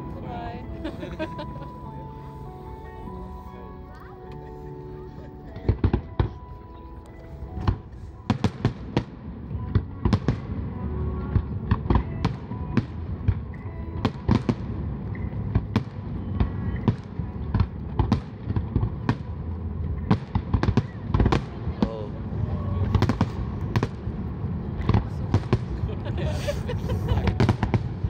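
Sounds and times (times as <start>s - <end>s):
fireworks bangs: 7.6s - 10.6s, 20.0s - 28.0s.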